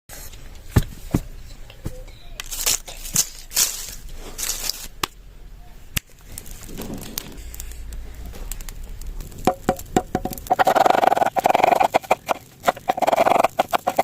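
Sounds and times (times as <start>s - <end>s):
rustling or tearing: 2.4s - 5.0s
sharp clicks and knocks: 6.0s - 14.0s.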